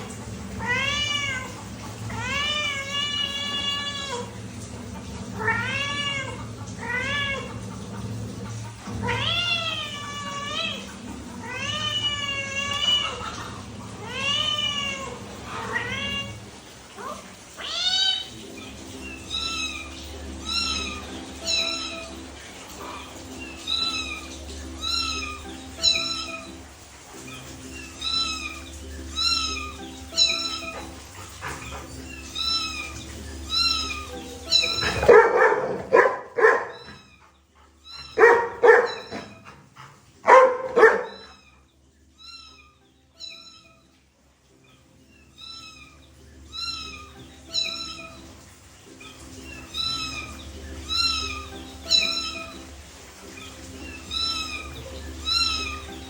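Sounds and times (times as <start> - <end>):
high meow-like calls: 17.0 - 22.2, 22.9 - 26.6, 27.2 - 31.0, 31.7 - 35.1, 45.2 - 56.0
music track: 17.6 - 56.0
loud bark-like bursts: 34.8 - 37.0, 38.1 - 39.3, 40.2 - 41.3.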